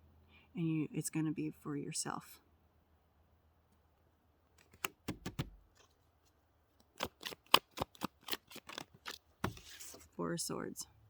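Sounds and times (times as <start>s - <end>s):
cards being shuffled: 4.6s - 6.0s, 6.8s - 10.1s.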